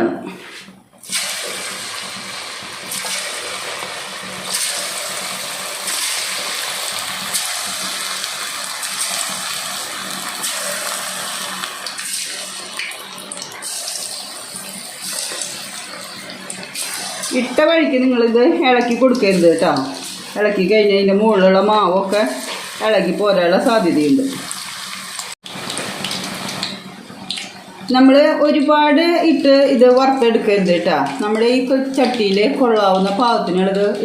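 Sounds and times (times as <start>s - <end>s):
chicken sizzling in frying oil: 1.0s - 17.6s, 21.8s - 27.7s.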